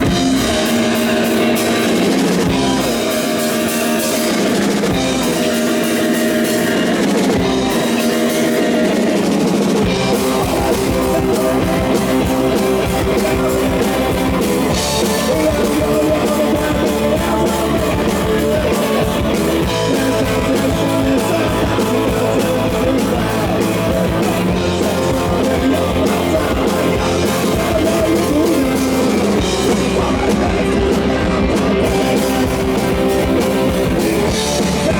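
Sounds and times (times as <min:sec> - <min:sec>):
distorted electric guitar: 0:00.0 - 0:34.9
driving drum kit: 0:00.0 - 0:34.9.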